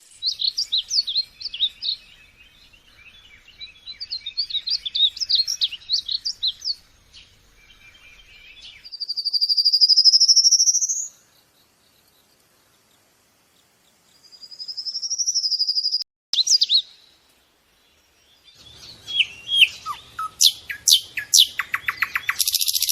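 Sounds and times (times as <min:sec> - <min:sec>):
small birds twittering: 0:00.0 - 0:22.9
bird trill rising: 0:18.6 - 0:22.9.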